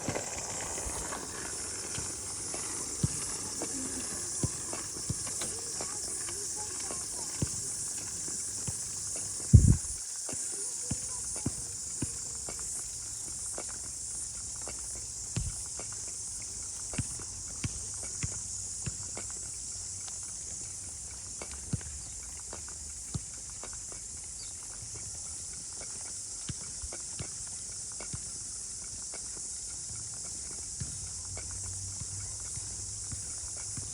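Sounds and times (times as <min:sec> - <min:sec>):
high-pitched hiss: 0:00.0 - 0:33.9
high-pitched insect chorus: 0:00.0 - 0:33.9
low thumps: 0:09.4 - 0:10.0.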